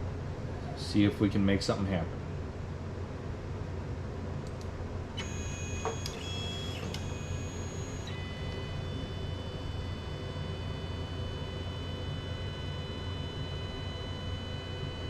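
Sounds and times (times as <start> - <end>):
steady low hum: 0.0 - 15.0
stepper motors whining: 5.2 - 15.0.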